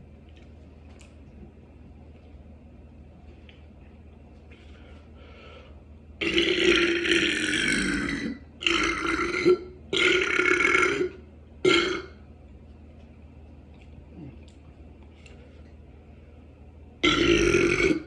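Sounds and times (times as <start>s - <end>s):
person burping: 6.2s - 12.2s, 17.0s - 18.0s.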